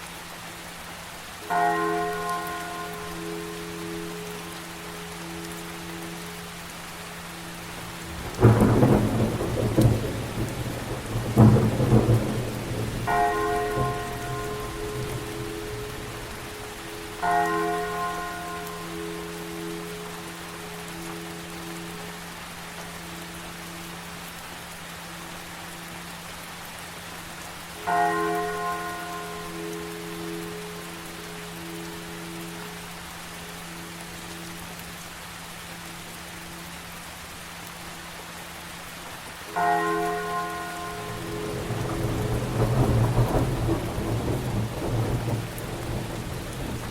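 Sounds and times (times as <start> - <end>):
steady rain: 0.0 - 46.9
church bell toll: 1.5 - 4.5, 11.3 - 20.3, 27.9 - 30.8, 39.5 - 44.4
thunderclaps rumbling: 7.8 - 16.9, 41.1 - 46.9.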